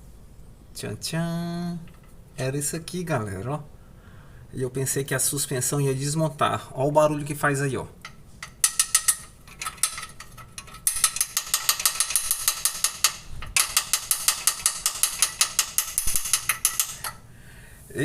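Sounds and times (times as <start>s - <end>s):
rapid regular clicking of stone: 8.0s - 17.2s.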